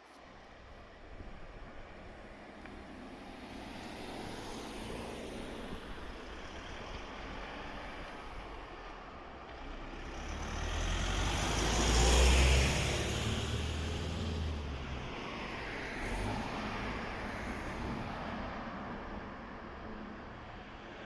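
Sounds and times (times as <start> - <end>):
background traffic noise: 0.0 - 21.0
vehicle driving past: 9.7 - 18.0.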